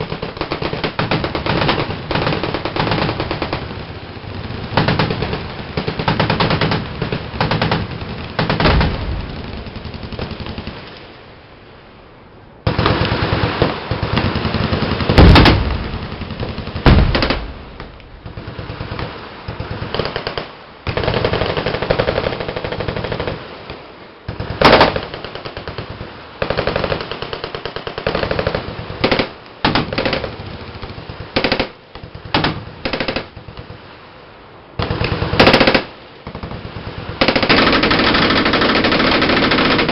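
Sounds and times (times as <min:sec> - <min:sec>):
machine guns firing bursts: 0:00.0 - 0:10.8, 0:12.7 - 0:17.5, 0:18.2 - 0:23.4, 0:24.3 - 0:33.7, 0:34.8 - 0:39.9
loud single gunshots: 0:15.2 - 0:15.9.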